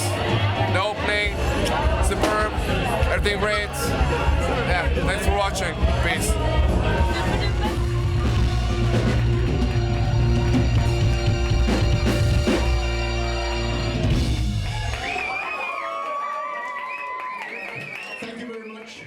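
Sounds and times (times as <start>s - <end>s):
rock background music: 0.0s - 15.0s.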